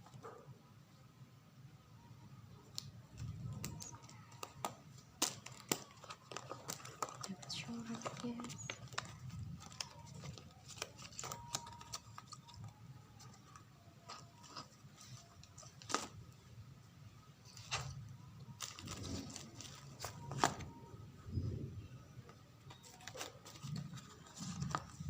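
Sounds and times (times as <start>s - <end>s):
packaging rustling: 2.7s - 16.4s, 17.4s - 20.9s, 22.3s - 25.0s.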